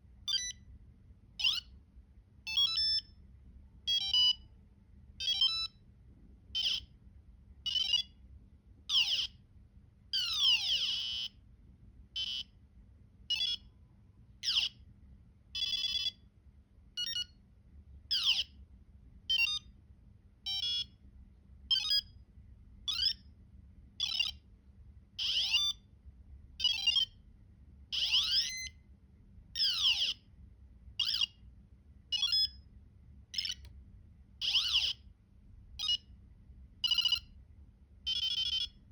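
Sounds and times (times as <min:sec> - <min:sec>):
electronic buzzer beeps and trills: 0:34.4 - 0:35.0, 0:38.1 - 0:38.8.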